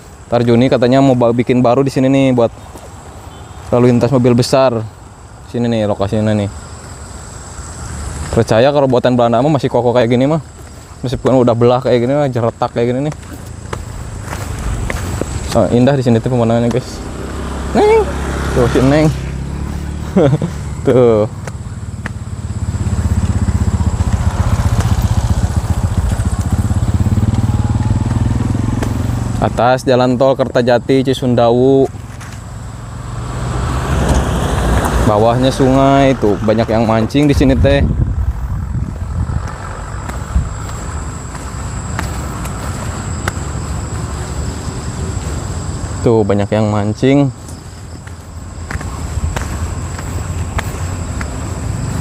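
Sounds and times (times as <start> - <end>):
high-pitched insect drone: 0.0 - 52.0
low outdoor rumble: 3.7 - 52.0
motorcycle engine running: 12.6 - 31.1, 31.8 - 52.0.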